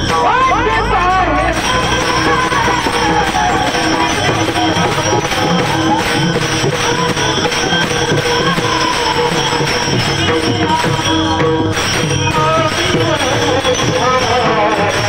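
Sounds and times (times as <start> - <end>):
drum: 0.0 - 15.0
hand cymbals clashing: 0.0 - 15.0
man singing devotional song: 0.0 - 15.0.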